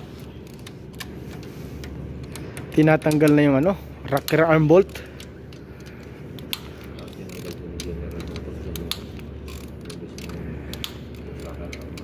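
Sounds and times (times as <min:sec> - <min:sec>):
steady low hum: 0:00.0 - 0:12.0
ratchet wrench clicking: 0:04.2 - 0:12.0.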